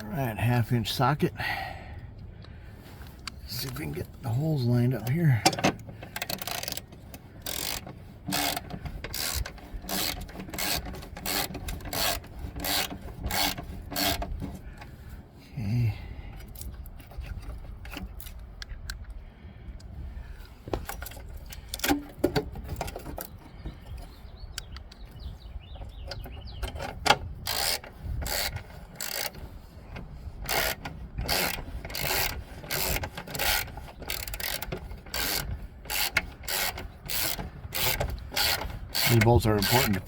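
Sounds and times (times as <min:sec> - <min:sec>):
small clicks and rubbing: 0:03.0 - 0:14.9, 0:16.4 - 0:19.2
socket ratchet clicking: 0:05.5 - 0:14.4, 0:26.7 - 0:29.4, 0:30.4 - 0:40.0.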